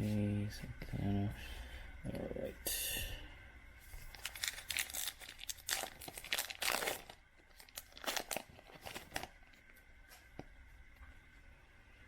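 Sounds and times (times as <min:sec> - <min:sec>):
cards and packaging rustling: 0:04.0 - 0:09.6.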